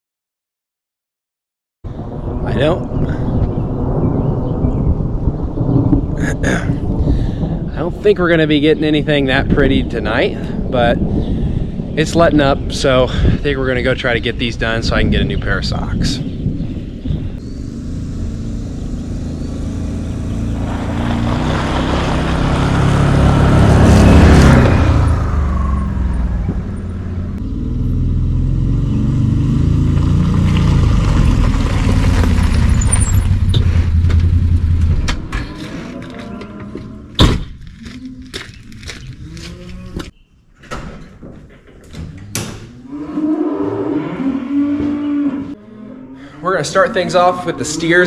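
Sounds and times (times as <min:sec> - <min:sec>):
vehicle engine running: 0:17.4 - 0:35.7
sharp knock: 0:37.2 - 0:37.6.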